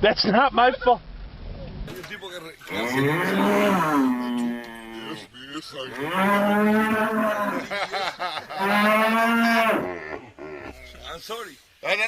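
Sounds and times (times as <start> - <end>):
cattle mooing: 2.7 - 7.7, 8.4 - 11.2.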